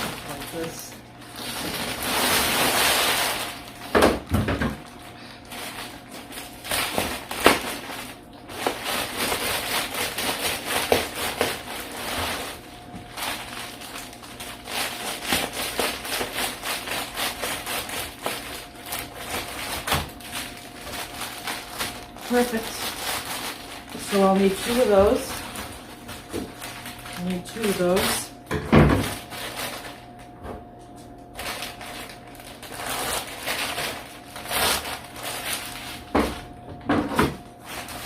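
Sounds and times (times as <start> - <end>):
foil crinkling and crackling: 0.0 - 38.0
foil insulation rustling: 0.0 - 38.0.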